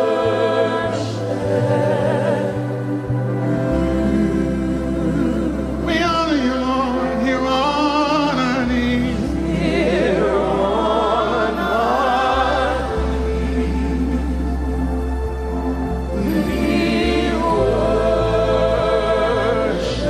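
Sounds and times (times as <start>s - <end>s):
person singing with vibrato: 0.0s - 15.1s
steady bass: 0.0s - 20.0s
sustained keyboard chords: 0.0s - 20.0s.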